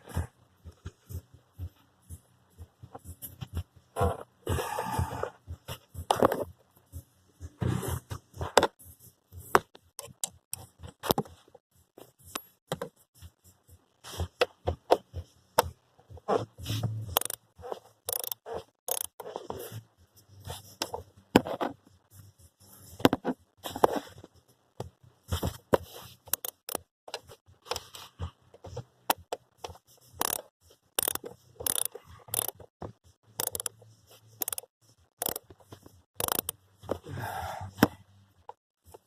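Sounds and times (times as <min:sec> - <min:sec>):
hand tools clicking and scraping: 0:16.6 - 0:19.6, 0:25.4 - 0:28.0, 0:29.1 - 0:32.7, 0:33.4 - 0:37.0.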